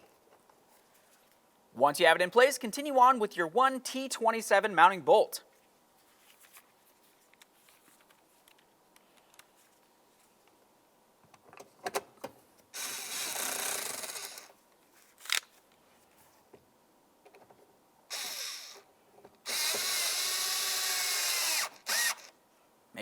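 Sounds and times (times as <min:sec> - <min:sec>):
power screwdriver driving screw: 0:12.8 - 0:14.5, 0:18.1 - 0:18.8, 0:19.5 - 0:22.3.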